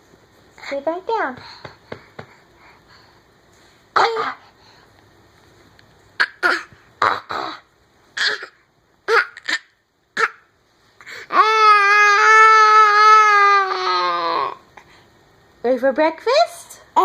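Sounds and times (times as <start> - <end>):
baby fake coughing: 6.2 - 10.5.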